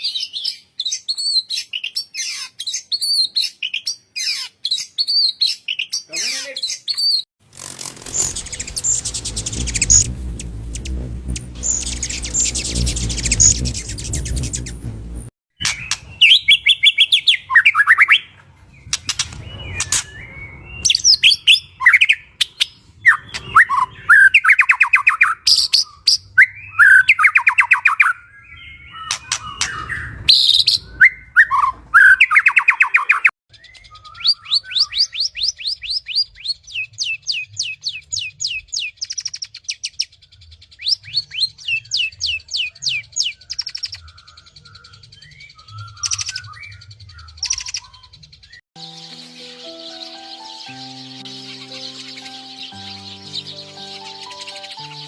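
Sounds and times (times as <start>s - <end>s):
songbirds chirping and calling: 0.0s - 7.3s, 15.6s - 55.0s
fast high chirps: 7.6s - 16.8s.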